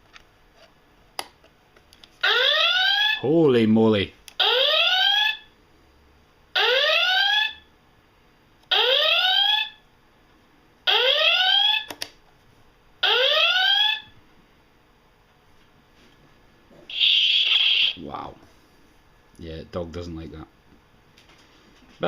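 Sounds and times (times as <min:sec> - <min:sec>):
rising whoop alarm klaxon: 0:16.9 - 0:18.0.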